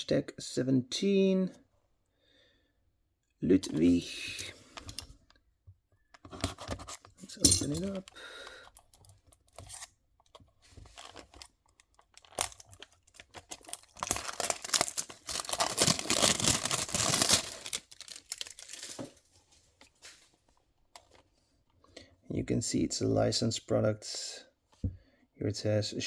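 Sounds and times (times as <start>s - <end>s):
packaging crinkling and tearing: 10.8s - 19.3s
packaging handling clicks: 11.0s - 19.0s.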